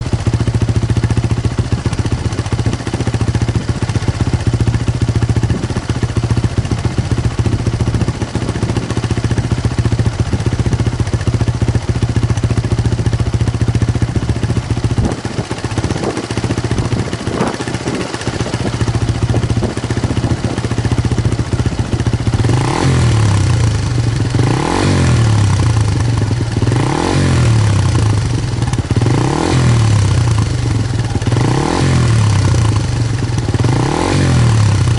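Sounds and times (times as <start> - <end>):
motorcycle engine idling: 0.0 - 34.9
engine revving: 15.0 - 34.9.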